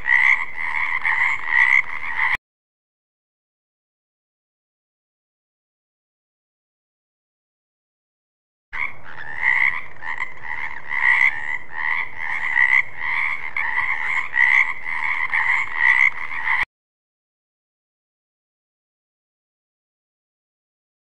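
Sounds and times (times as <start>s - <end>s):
frog croaking: 0.0s - 2.4s, 8.8s - 16.7s.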